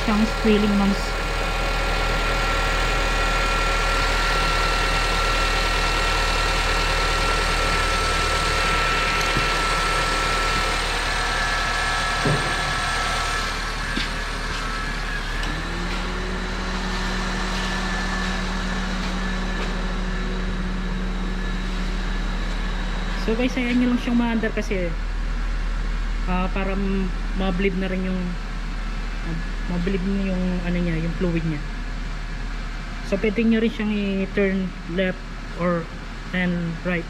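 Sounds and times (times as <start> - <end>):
car engine idling: 0.0 - 26.3
steady low hum: 0.0 - 37.0.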